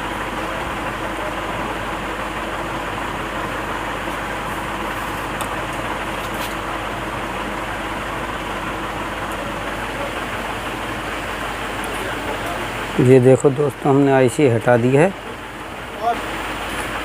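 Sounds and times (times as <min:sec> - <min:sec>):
steady background noise: 0:00.0 - 0:17.0.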